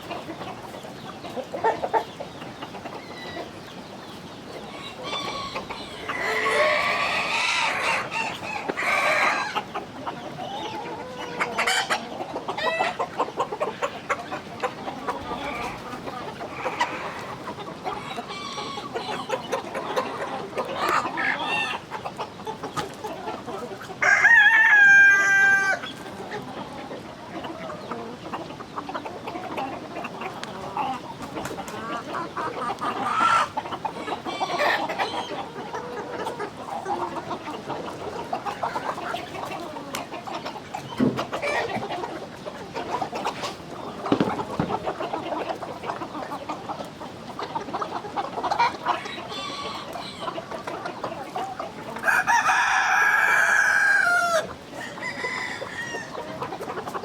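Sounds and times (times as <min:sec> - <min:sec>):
chickens clucking: 0:00.0 - 0:57.0
rooster crowing: 0:04.7 - 0:09.6, 0:24.0 - 0:25.8, 0:52.0 - 0:56.2.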